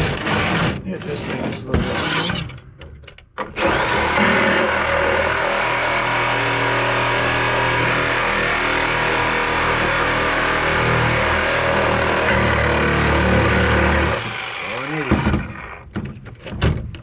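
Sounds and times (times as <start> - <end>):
power tool cutting metal: 3.6 - 15.9.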